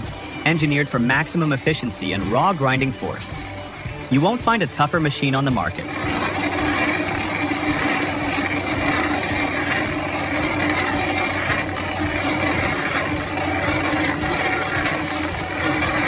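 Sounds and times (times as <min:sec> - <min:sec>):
stump grinder engine grinding: 0:00.0 - 0:16.0.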